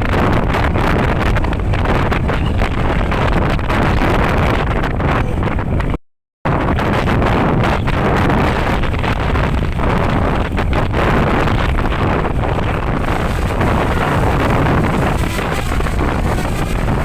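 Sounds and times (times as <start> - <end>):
wind buffeting microphone: 0.0 - 17.0
rumble of passing vehicles: 11.6 - 17.0.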